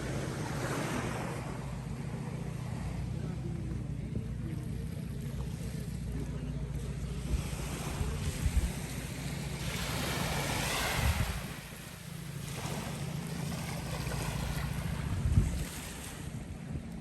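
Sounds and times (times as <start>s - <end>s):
small waves washing onto beach: 0.0s - 17.0s
steady low hum: 0.0s - 17.0s
wind buffeting microphone: 7.1s - 11.8s, 12.6s - 17.0s.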